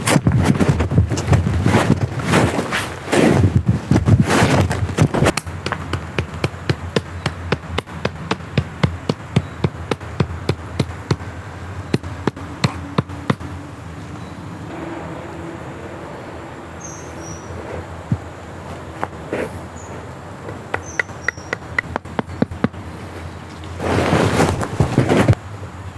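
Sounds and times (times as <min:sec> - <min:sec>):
faint steady hum: 0:03.5 - 0:25.9
rapid sharp knocks: 0:05.2 - 0:11.3, 0:20.5 - 0:23.0.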